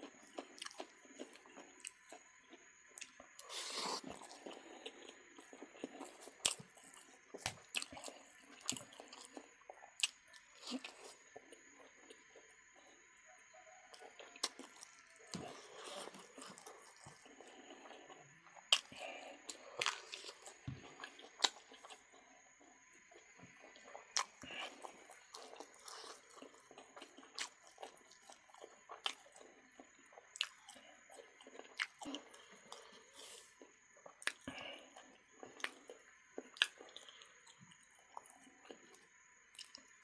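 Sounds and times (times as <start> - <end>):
chewing and biting meat: 14.0 - 22.2.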